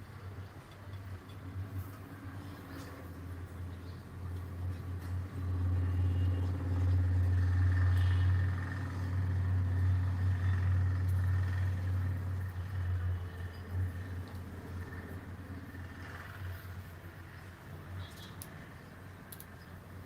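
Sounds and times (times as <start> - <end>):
low motor hum: 2.6 - 17.9.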